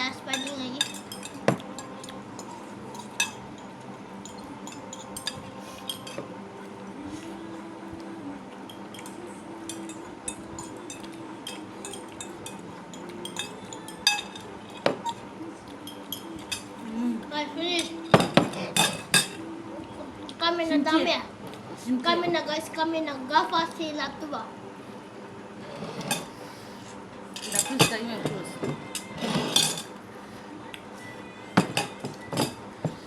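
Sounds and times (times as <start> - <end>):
cutlery clinking on a plate: 0.3 - 6.3, 8.7 - 15.2, 17.8 - 19.4, 25.8 - 26.3, 27.4 - 30.0, 31.6 - 33.0.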